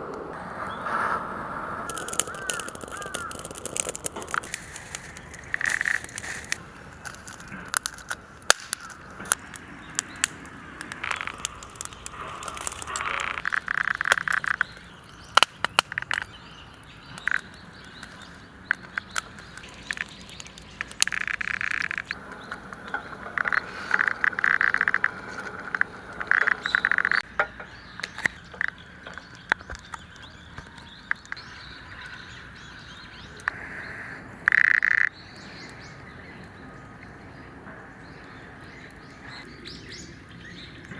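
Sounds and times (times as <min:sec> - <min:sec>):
campfire crackling and popping: 0:00.0 - 0:32.2
chirping animal calls: 0:00.0 - 0:40.9.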